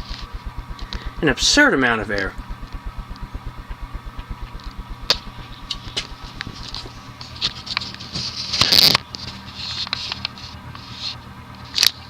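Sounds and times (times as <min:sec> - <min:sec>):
rapid pulsing of air: 0:00.0 - 0:08.9
ceiling fan motor humming: 0:00.0 - 0:11.8.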